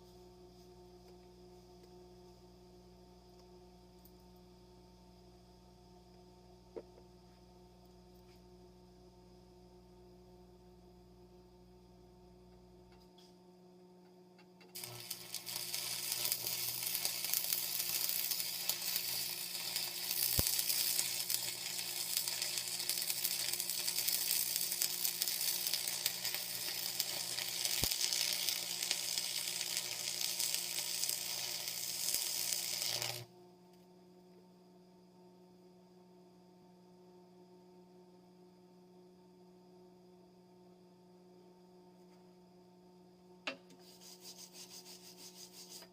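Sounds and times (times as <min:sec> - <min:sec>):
faint steady hum: 0:00.0 - 0:45.9
welding arc crackling: 0:14.8 - 0:33.3.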